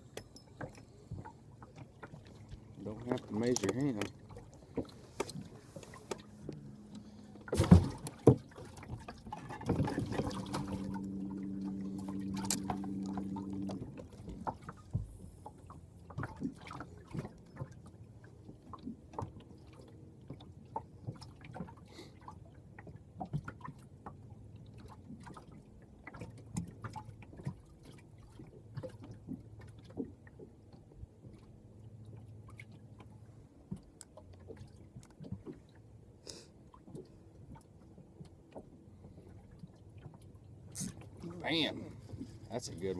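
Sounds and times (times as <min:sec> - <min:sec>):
water splashing and dripping: 0:00.2 - 0:35.9
steady hum: 0:09.6 - 0:16.0.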